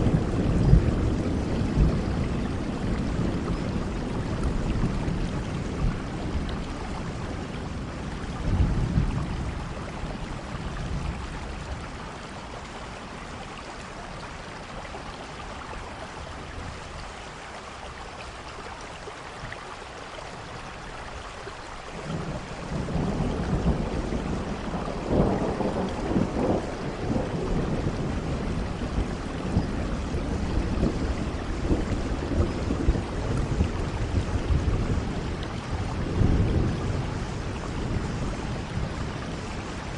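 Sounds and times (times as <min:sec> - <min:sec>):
rolling thunder: 0:00.0 - 0:12.6, 0:22.0 - 0:39.9
steady rain: 0:00.0 - 0:39.9.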